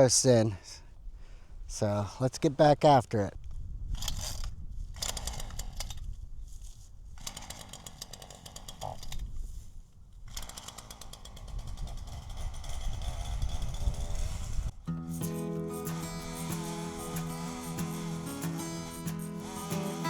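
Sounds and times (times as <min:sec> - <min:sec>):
chainsaw revving: 0:07.2 - 0:09.1, 0:10.3 - 0:14.5, 0:15.3 - 0:20.0.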